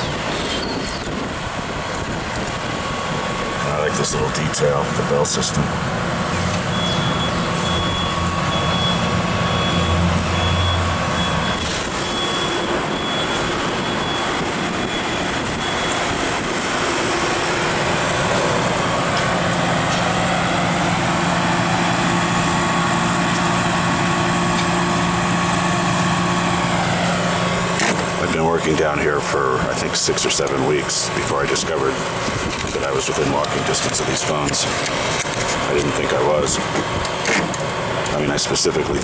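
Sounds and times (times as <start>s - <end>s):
city street traffic: 0.0s - 39.0s
heavy vehicle running: 0.0s - 39.0s
high beeps: 6.7s - 14.3s.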